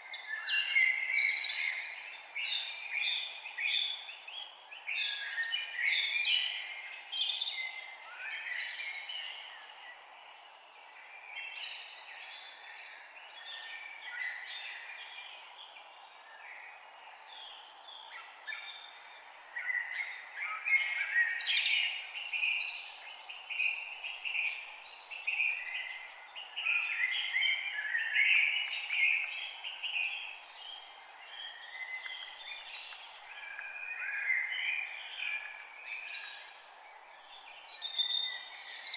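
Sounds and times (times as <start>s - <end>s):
faint steady hiss: 0.0s - 38.9s
songbirds chirping and trilling: 0.0s - 38.9s.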